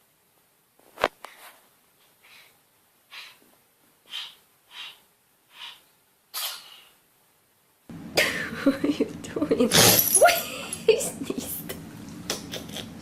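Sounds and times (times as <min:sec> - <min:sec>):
animal snorting sneezes: 0:05.6 - 0:06.9.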